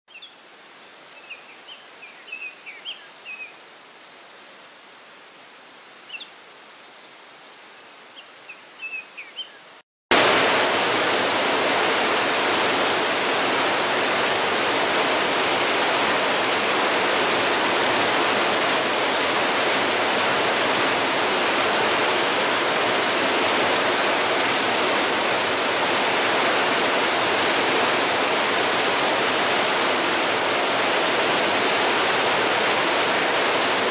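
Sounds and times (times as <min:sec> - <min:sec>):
stream rushing water: 0:10.1 - 0:33.9.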